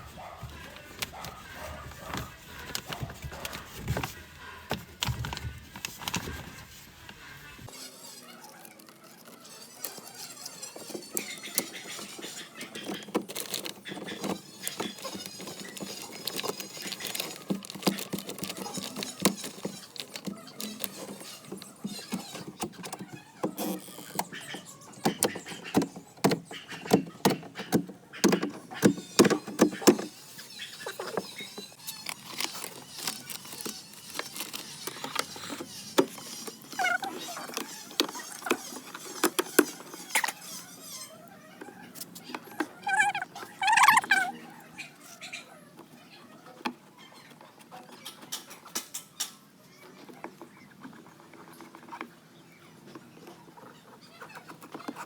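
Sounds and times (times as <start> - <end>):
tools clicking knocking and scraping: 9.2 - 30.3, 30.9 - 41.0.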